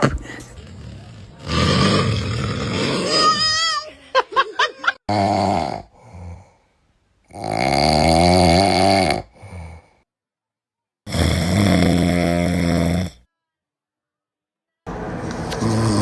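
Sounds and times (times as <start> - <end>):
man snoring loudly: 0.0 - 3.3, 5.1 - 6.5, 7.3 - 9.9, 11.1 - 13.3, 15.2 - 16.0.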